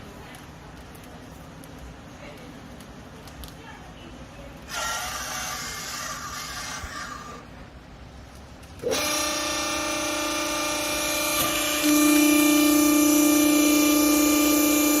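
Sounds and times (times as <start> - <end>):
hydraulic baler motor humming: 8.8 - 15.0.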